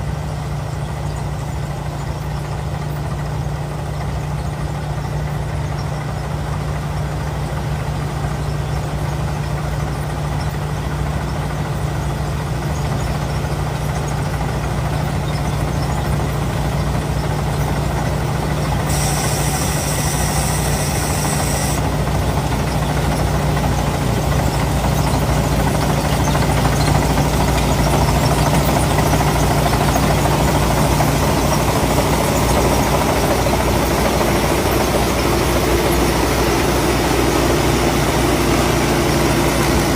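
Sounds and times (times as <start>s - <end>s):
combine harvester running: 0.0s - 39.9s
high-pitched whine: 17.6s - 39.9s.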